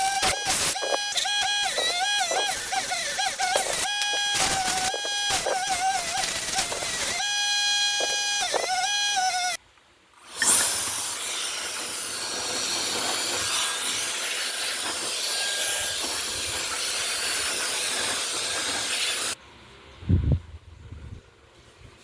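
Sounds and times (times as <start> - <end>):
wood lathe scraping wood: 0.0 - 9.6, 10.4 - 19.4.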